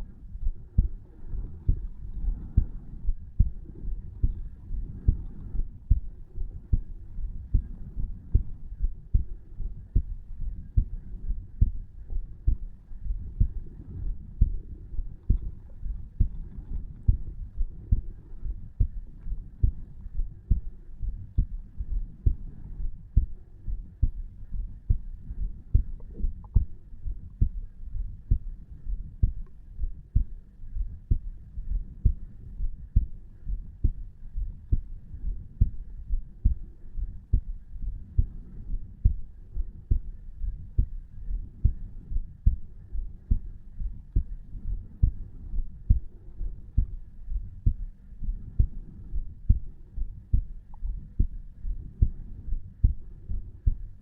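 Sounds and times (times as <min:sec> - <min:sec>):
heartbeat thumps: 0:00.0 - 0:54.0.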